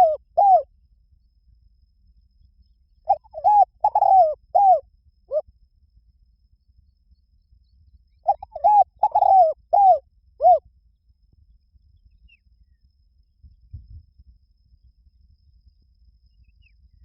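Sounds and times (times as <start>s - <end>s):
dove cooing: 0.0s - 0.7s, 3.1s - 5.4s, 8.3s - 10.6s.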